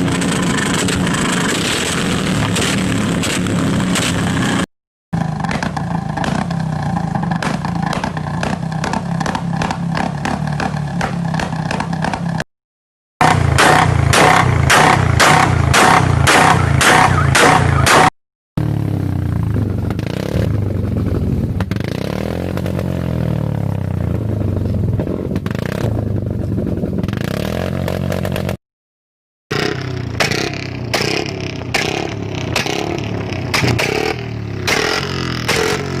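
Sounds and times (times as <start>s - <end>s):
exhaust pops and crackles: 0.0s - 4.6s, 5.2s - 12.4s, 13.2s - 18.1s, 24.1s - 28.6s, 29.6s - 36.0s
motorcycle engine idling and revving: 0.0s - 12.5s, 13.2s - 28.6s, 29.5s - 36.0s.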